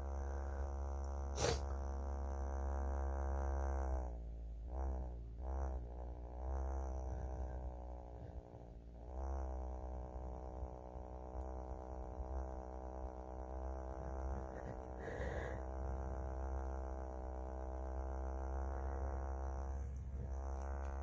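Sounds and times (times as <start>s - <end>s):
vibrator buzzing: 0.0s - 21.0s
short breathy sound: 1.4s - 1.7s, 14.3s - 15.7s.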